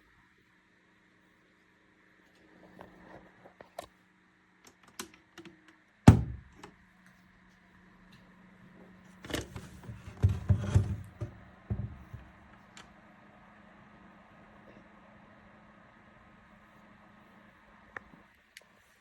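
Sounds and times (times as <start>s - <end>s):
steady low hum: 5.8s - 19.0s
loud thunk: 6.1s - 6.5s, 10.1s - 12.3s
knocks and rattles: 9.3s - 12.4s.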